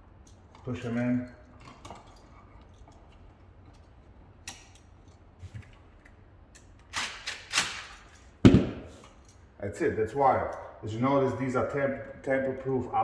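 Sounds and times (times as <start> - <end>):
sharp knock: 8.4 - 8.9.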